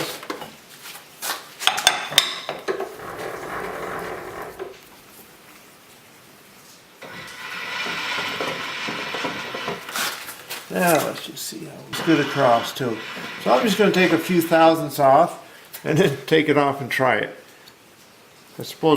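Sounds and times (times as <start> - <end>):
milling machine rattling: 2.8 - 4.8, 7.0 - 10.2, 11.9 - 14.5.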